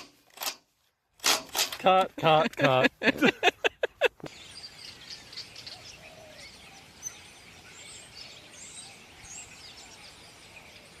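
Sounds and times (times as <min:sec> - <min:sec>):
small birds chirping: 0:04.2 - 0:11.0.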